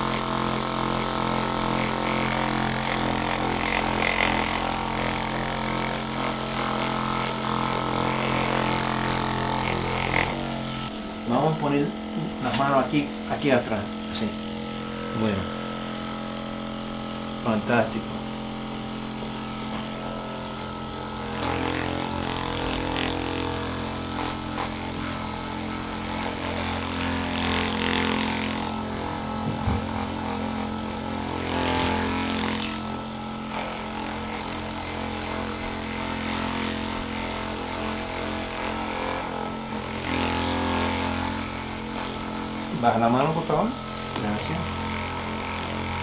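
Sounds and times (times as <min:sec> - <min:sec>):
small electric motor humming: 0:00.0 - 0:46.0.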